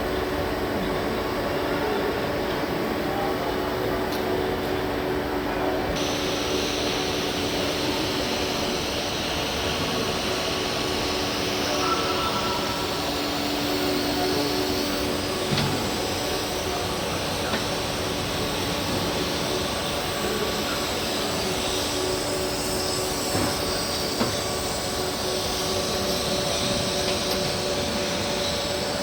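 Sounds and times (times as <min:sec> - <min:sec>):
grinding machine humming: 0:05.9 - 0:29.0
hiss: 0:06.0 - 0:29.0.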